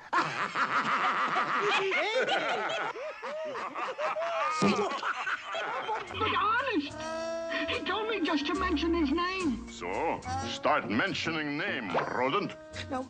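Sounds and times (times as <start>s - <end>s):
cartoon cats snickering and laughing: 3.5s - 7.6s.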